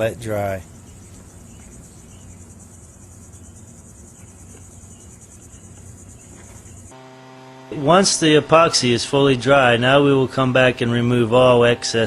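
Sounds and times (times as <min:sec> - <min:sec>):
insects chirping: 0:00.0 - 0:07.0.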